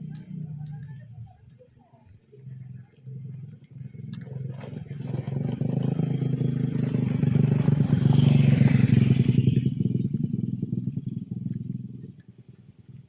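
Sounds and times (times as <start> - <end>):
vehicle engine passing by: 3.9 - 12.3.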